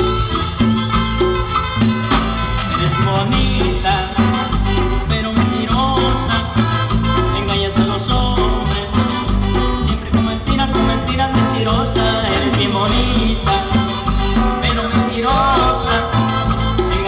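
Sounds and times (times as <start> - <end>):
live band playing latin dance music: 0.0 - 17.0.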